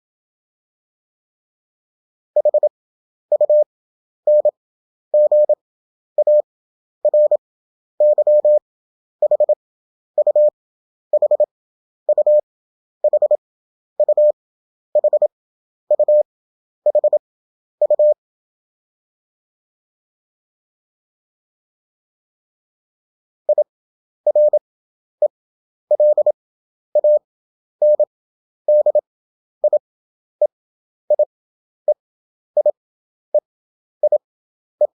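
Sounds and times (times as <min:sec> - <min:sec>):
morse code beeps: 0:02.4 - 0:02.7, 0:03.3 - 0:03.7, 0:04.3 - 0:04.6, 0:05.2 - 0:05.6, 0:06.2 - 0:06.5, 0:07.1 - 0:07.4, 0:08.0 - 0:08.6, 0:09.2 - 0:09.6, 0:10.2 - 0:10.6, 0:11.2 - 0:11.5, 0:12.1 - 0:12.4, 0:13.0 - 0:13.4, 0:14.0 - 0:14.4, 0:15.0 - 0:15.3, 0:15.9 - 0:16.3, 0:16.9 - 0:17.2, 0:17.8 - 0:18.2, 0:23.5 - 0:23.7, 0:24.3 - 0:24.6, 0:25.2 - 0:26.4, 0:27.0 - 0:27.2, 0:27.8 - 0:28.1, 0:28.7 - 0:29.0, 0:29.6 - 0:29.8, 0:30.4 - 0:31.3, 0:32.6 - 0:33.4, 0:34.0 - 0:34.2.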